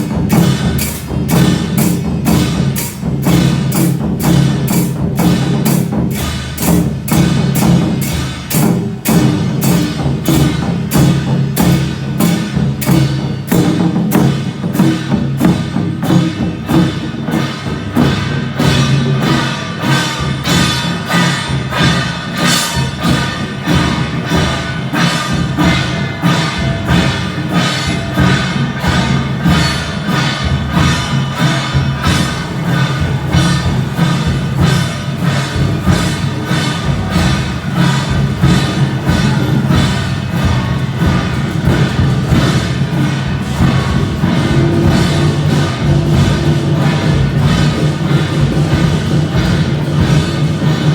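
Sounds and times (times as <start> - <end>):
percussion on a steady beat: 0.0 - 50.9
sustained pitched tones: 43.4 - 49.5.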